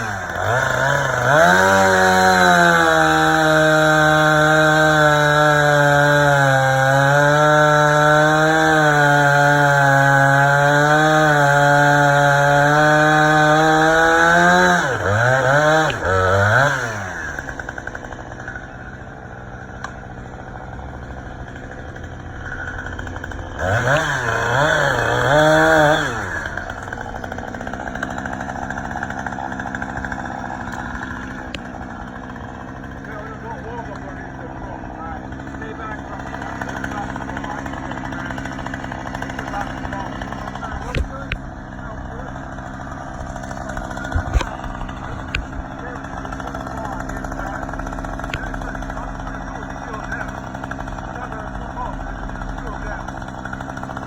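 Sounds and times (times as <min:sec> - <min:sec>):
chainsaw revving and idling: 0:00.0 - 0:54.0.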